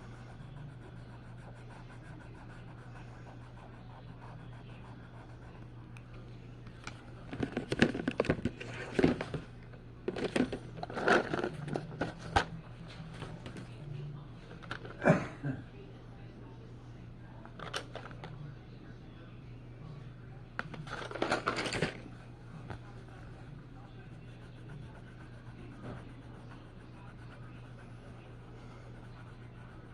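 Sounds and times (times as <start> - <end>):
steady low hum: 0.0 - 29.9
scraping and crinkling handling noise: 6.7 - 13.8, 20.6 - 22.9.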